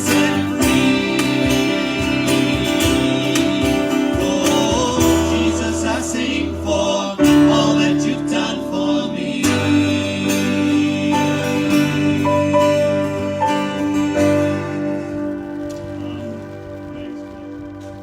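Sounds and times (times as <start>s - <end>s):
singing: 0.0s - 13.9s
guitar-led band playing: 0.0s - 18.0s.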